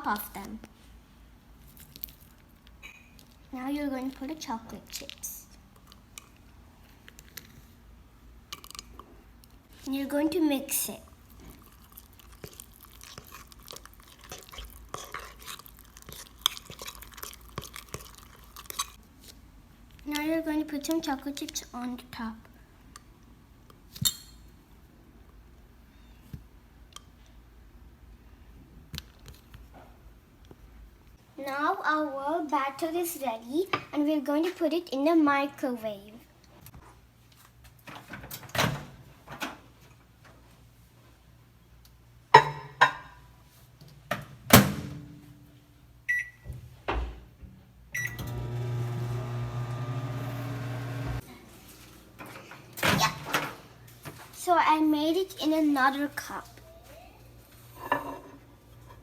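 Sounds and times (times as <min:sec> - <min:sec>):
keypad beeps: 0:46.1 - 0:46.4
microwave oven humming: 0:48.0 - 0:51.2.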